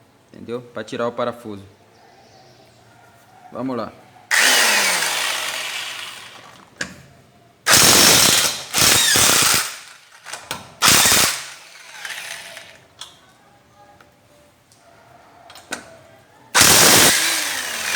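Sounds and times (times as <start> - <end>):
impact wrench hammering bolts: 7.7 - 13.1, 16.6 - 17.9.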